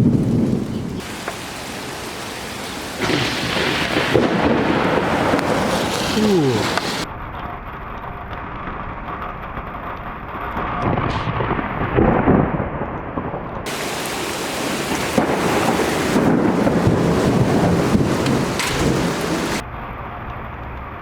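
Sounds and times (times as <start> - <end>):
thunder rumbling: 0.0 - 19.9
steady rushing hiss: 1.0 - 7.1, 13.7 - 19.6.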